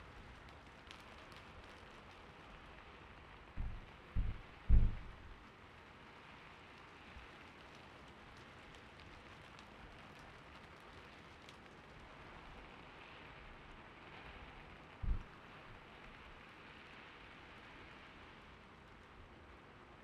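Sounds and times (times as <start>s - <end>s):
gentle steady rain: 0.0s - 20.0s
short low thump: 3.6s - 5.4s, 15.0s - 15.3s.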